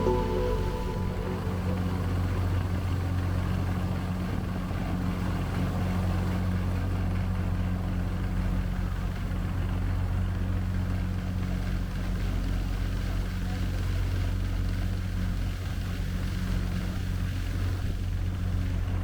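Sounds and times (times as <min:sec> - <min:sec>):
boat engine droning: 0:00.0 - 0:04.5.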